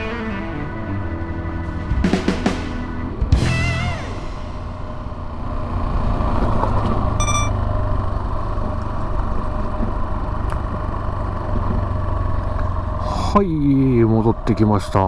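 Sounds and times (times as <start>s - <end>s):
motorcycle engine running: 0.0s - 13.1s
brief high beep: 7.2s - 7.6s.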